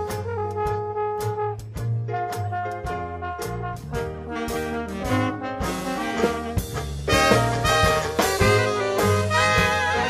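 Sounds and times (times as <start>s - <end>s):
bass line: 0.0s - 10.0s
jazz band playing blues: 0.0s - 10.0s
brass horns holding long notes: 4.3s - 10.0s.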